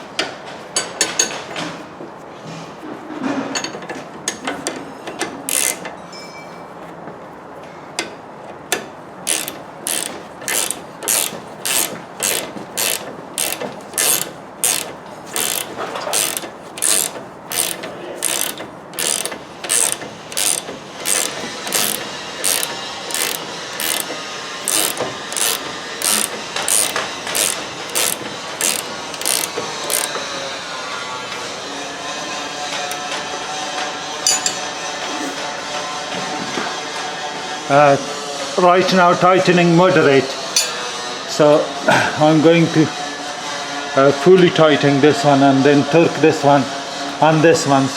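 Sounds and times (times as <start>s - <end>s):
ratchet wrench clicking: 5.5s - 5.9s, 9.3s - 30.2s.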